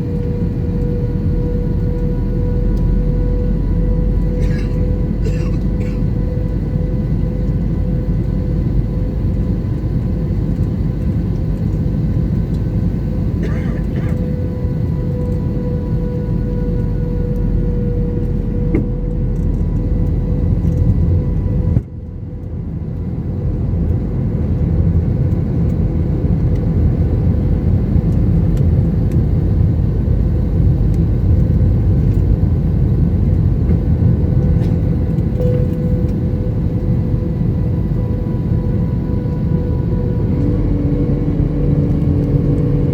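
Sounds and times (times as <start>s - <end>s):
aircraft cabin engine rumble: 0.0s - 42.9s
faint steady whine: 0.0s - 42.9s.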